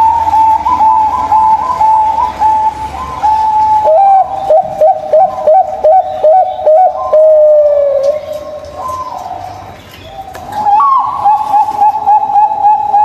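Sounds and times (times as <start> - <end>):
doves cooing: 0.0 - 13.0.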